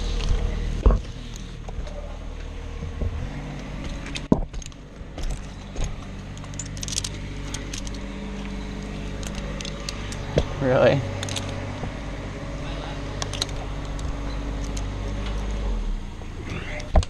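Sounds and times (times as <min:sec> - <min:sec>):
engine droning: 0:00.0 - 0:17.0
metal hardware clinking: 0:03.5 - 0:12.0, 0:13.2 - 0:15.5.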